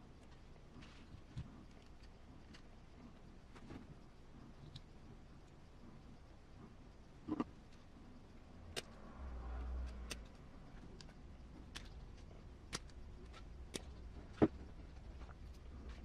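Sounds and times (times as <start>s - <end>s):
small parts clicking and tapping: 8.7s - 9.0s, 9.6s - 14.6s.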